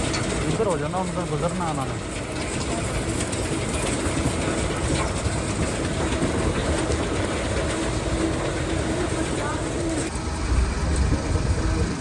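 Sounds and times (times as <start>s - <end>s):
loud mechanical rumble: 0.0s - 12.0s.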